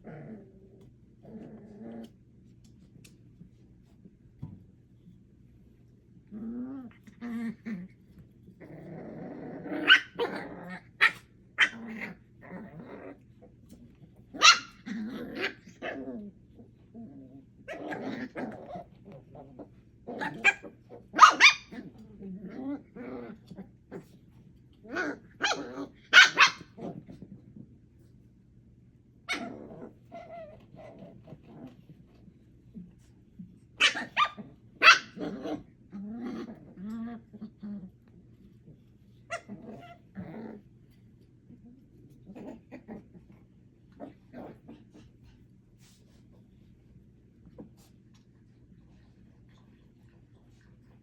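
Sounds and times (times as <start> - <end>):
puppies growling: 0.0 - 3.2, 6.2 - 27.8, 29.3 - 33.1, 33.8 - 46.7
puppy yelp: 14.4 - 14.8, 21.2 - 21.7, 25.4 - 26.7, 33.8 - 35.2.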